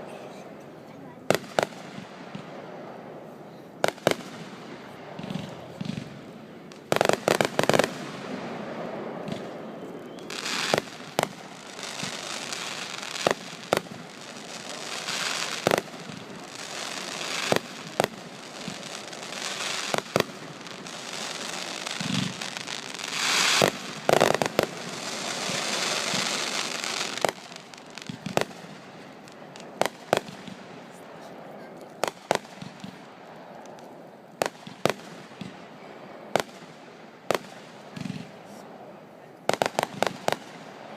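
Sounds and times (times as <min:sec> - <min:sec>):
fireworks crackling hiss: 0:00.0 - 0:40.9.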